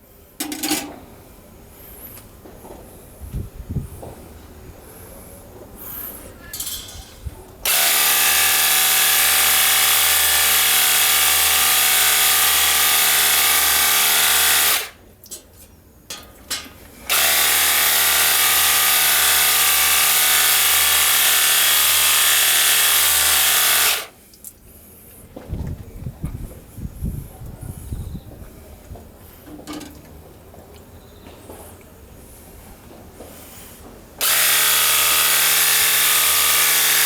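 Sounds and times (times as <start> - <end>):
pressure washer motor hum: 7.6 - 15.0, 17.0 - 24.1, 34.2 - 37.0.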